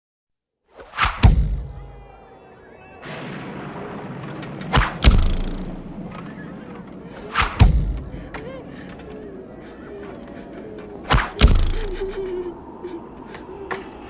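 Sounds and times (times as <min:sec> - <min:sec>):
heavy cracking impacts: 0:00.9 - 0:02.0, 0:03.0 - 0:09.1, 0:11.1 - 0:12.2
steady rough noise: 0:05.0 - 0:06.1.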